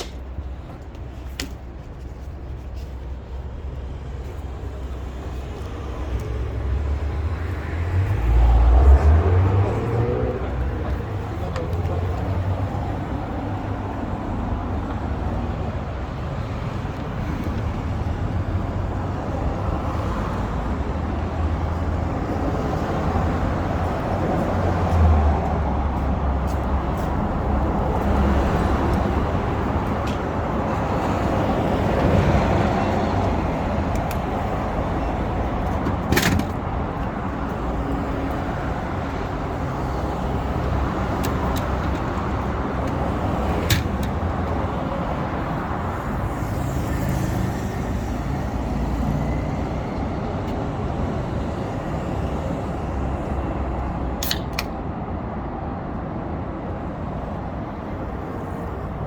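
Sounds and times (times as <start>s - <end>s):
passing cars and buses: 0.0s - 59.0s.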